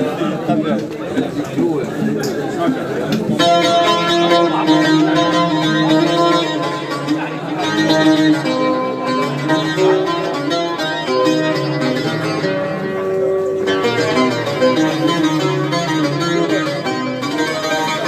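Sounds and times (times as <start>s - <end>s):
plucked string instrument melody: 0.0s - 18.0s.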